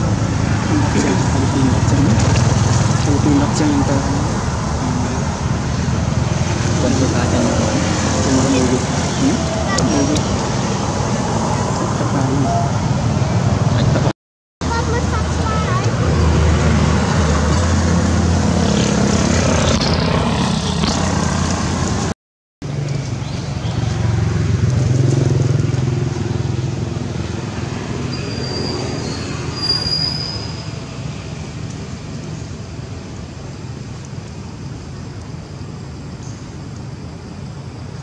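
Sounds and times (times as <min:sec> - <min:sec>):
vehicle engine running: 0:00.0 - 0:12.5
brief high squeal: 0:28.1 - 0:30.7.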